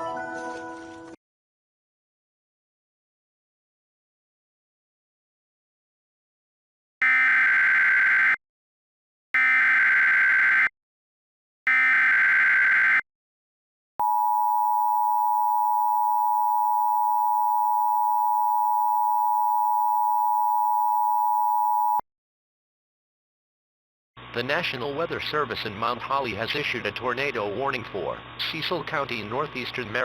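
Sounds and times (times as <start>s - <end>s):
two-tone attention signal: 14.0s - 22.0s.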